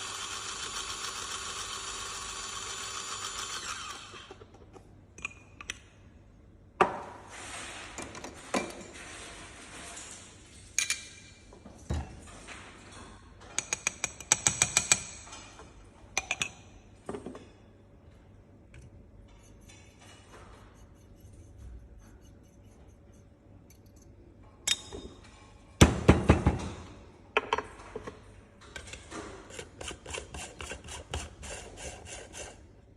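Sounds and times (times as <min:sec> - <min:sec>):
kitchenware clinking and knocking: 0:27.4 - 0:28.3.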